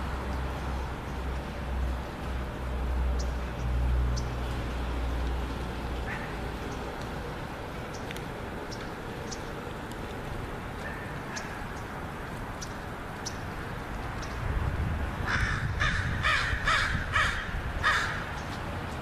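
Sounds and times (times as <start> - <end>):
crow cawing: 15.2 - 18.3.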